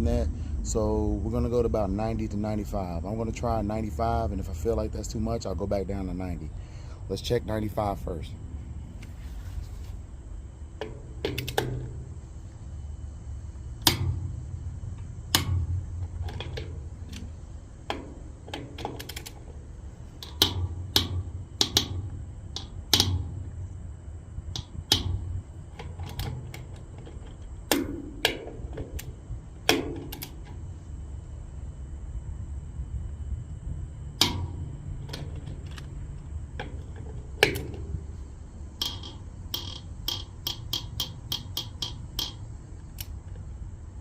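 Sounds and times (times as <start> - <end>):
low steady rumble: 0.0 - 44.0
torque wrench clicking: 10.8 - 12.0, 15.0 - 19.6, 20.2 - 23.4, 24.5 - 30.6, 38.7 - 43.2.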